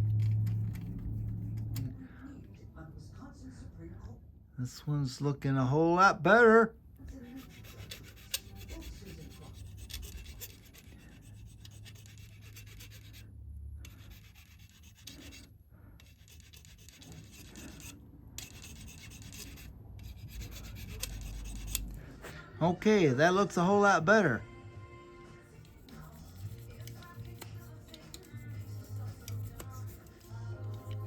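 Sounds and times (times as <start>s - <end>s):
faint rubbing and scraping: 0.0s - 2.4s, 7.0s - 22.5s, 25.4s - 31.0s.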